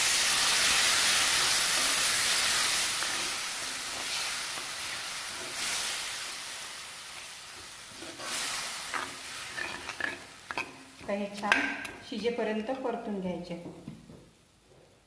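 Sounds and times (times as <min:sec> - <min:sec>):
food sizzling in hot oil: 0:00.0 - 0:13.1.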